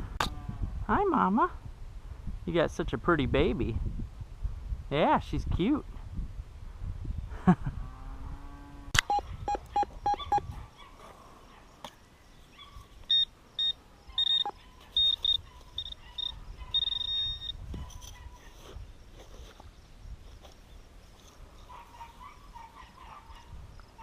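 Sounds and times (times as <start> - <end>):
metal detector beeping: 9.0 - 10.5, 13.0 - 17.6.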